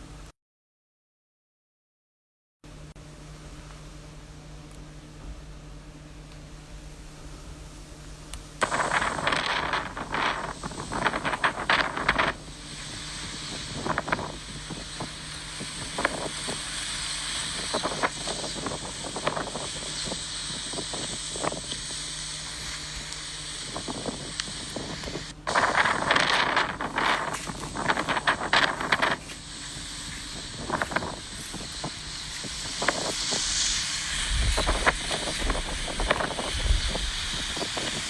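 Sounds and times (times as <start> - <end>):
wind hissing: 8.4 - 38.0
wind gusts buffeting microphone: 8.6 - 38.0.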